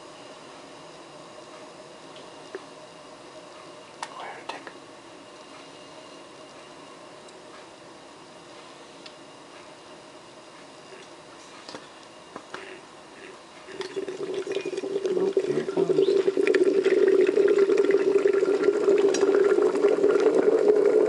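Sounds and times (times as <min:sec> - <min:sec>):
water bubbling to a boil: 0:13.7 - 0:21.0.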